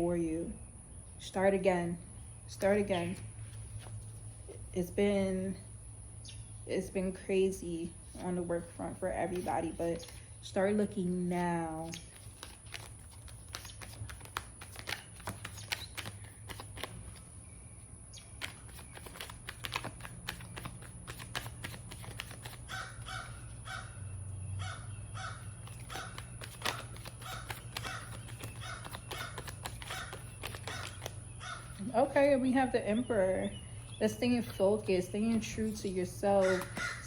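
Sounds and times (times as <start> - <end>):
cards being shuffled: 3.1 - 4.4, 8.1 - 10.3, 11.8 - 17.3, 18.3 - 23.5, 25.4 - 32.4, 33.8 - 37.0
bird calling short notes: 36.4 - 37.0.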